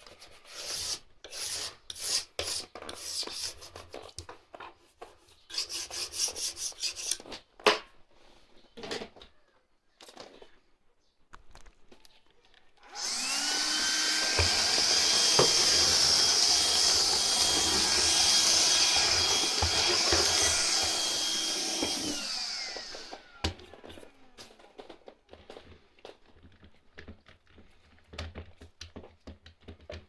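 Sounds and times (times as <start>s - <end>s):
vacuum motor whine: 12.8s - 23.8s.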